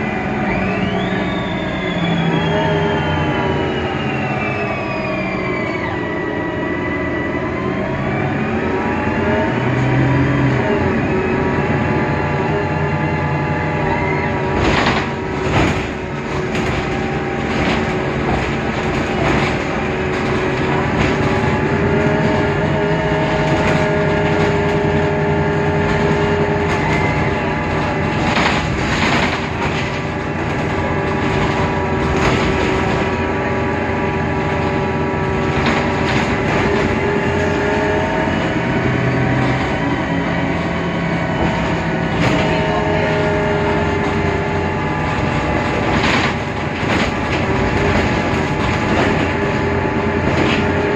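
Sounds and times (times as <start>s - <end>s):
city bus driving with whine: 0.0s - 50.9s
knocks and rattles: 14.3s - 50.9s.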